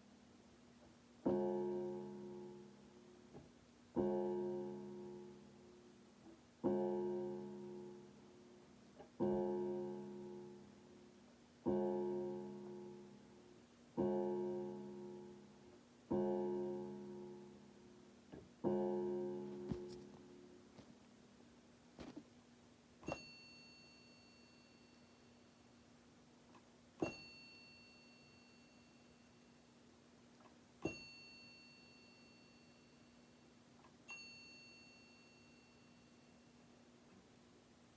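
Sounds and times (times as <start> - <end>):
low piano chord ringing: 1.2 - 3.2, 3.9 - 5.9, 6.6 - 20.6.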